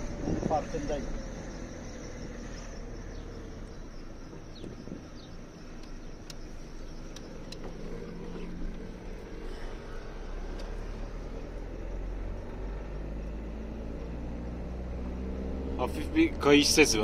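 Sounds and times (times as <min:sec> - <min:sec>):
car engine and road noise: 0:00.0 - 0:17.0
sharp clicks: 0:07.1 - 0:07.8.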